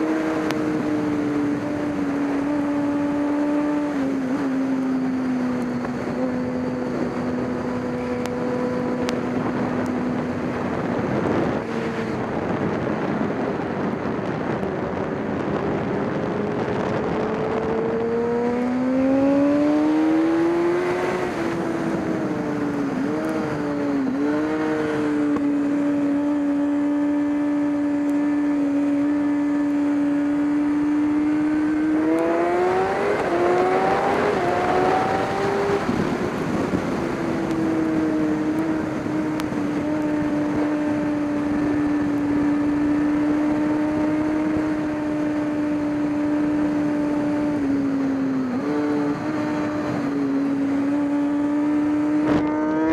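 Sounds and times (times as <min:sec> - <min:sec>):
racing car engine: 0:15.2 - 0:52.9.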